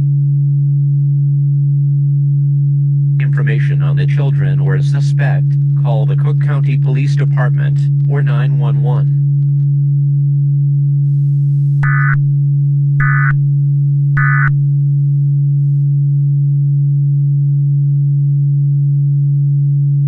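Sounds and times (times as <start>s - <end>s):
steady low drone tone: 0.0s - 20.0s
digital data tone bursts: 11.8s - 12.2s, 13.0s - 13.4s, 14.2s - 14.5s.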